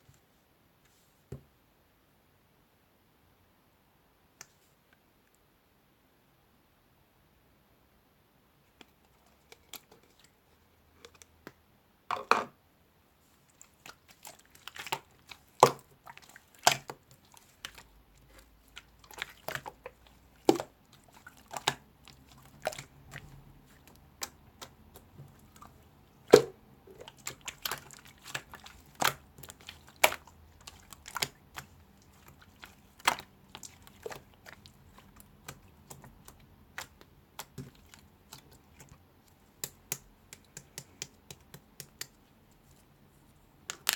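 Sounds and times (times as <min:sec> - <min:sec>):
sharp clicks and taps: 0:39.6 - 0:42.2.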